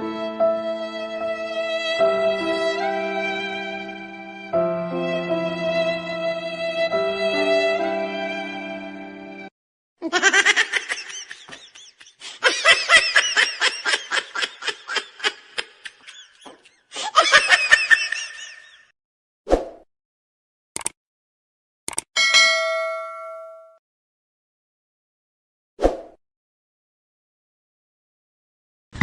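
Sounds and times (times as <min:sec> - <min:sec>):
high-pitched laughter: 0:10.0 - 0:18.9.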